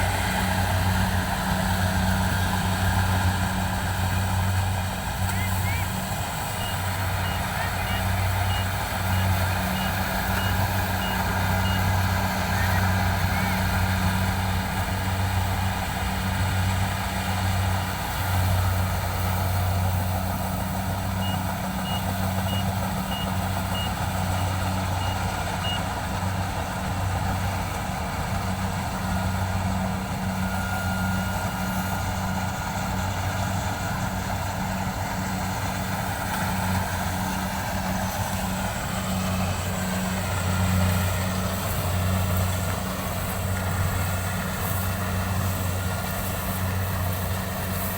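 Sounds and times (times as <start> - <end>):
engine humming: 0.0 - 47.9
short high beeps: 6.6 - 11.8.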